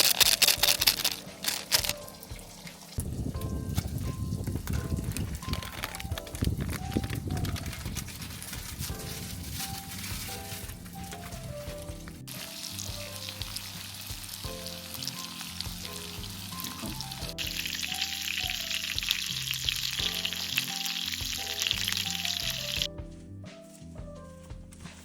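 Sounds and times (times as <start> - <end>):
background music: 0.0 - 25.0
food sizzling in a pan: 1.1 - 5.0, 12.3 - 22.9.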